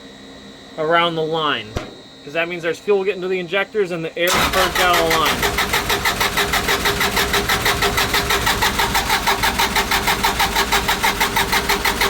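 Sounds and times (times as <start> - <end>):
diesel engine cranking on starter: 4.3 - 12.0.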